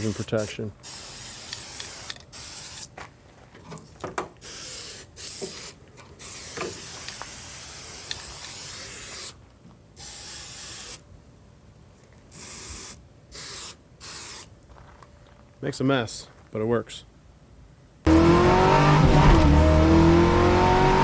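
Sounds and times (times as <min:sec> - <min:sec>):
aerosol can spraying: 0:00.0 - 0:02.9.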